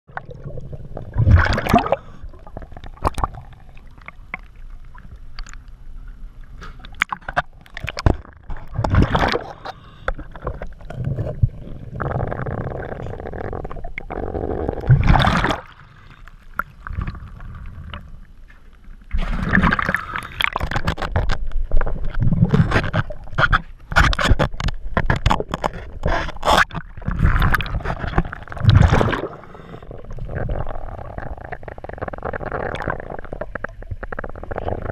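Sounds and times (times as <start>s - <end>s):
exhaust bubbles gurgling: 0.1s - 5.0s, 10.4s - 15.8s, 26.6s - 34.9s
regulator breathing underwater: 9.4s - 10.5s, 29.1s - 34.9s.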